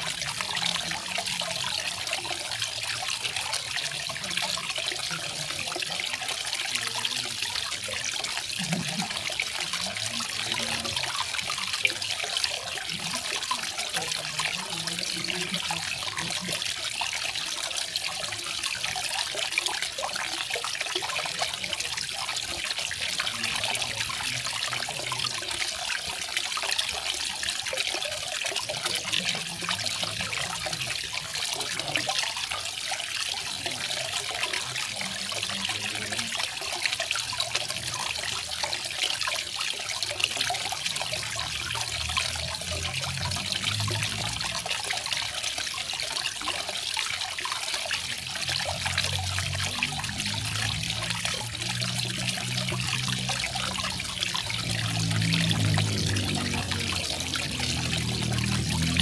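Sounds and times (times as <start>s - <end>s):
waterfall rushing: 49.1s - 59.0s.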